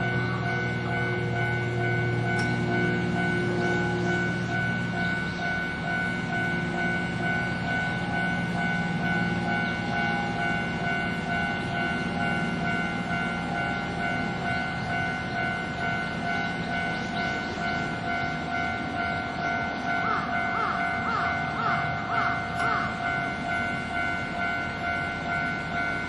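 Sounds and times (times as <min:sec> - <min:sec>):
level-crossing alarm clanging: 0:00.0 - 0:26.0
train wheels rumbling on rails: 0:00.0 - 0:26.0.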